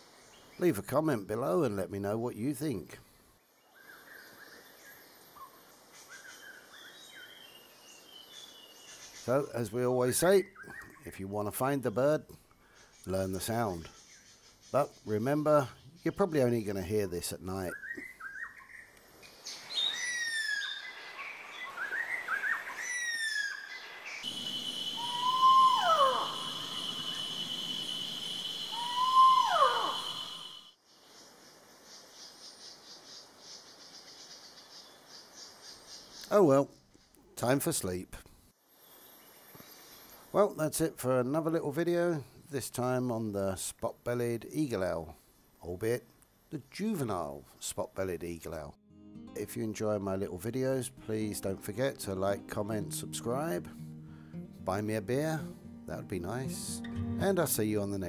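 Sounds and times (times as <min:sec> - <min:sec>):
forest ambience hiss: 0:00.0 - 0:48.7
bird chirping: 0:03.4 - 0:37.3
whistled bird calls: 0:17.7 - 0:30.7
owl wailing screams: 0:19.9 - 0:20.8, 0:22.4 - 0:23.7, 0:24.3 - 0:30.7
high insect drone: 0:24.2 - 0:35.6.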